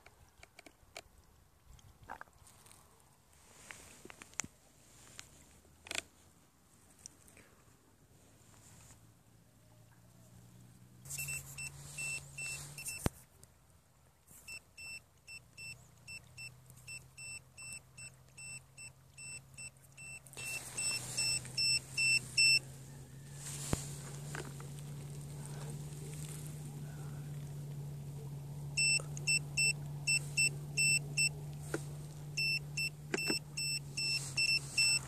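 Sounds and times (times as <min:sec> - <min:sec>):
short high beeps: 0:11.1 - 0:13.0, 0:14.5 - 0:23.3, 0:28.8 - 0:31.4, 0:32.3 - 0:35.0
steady low hum: 0:15.2 - 0:35.0.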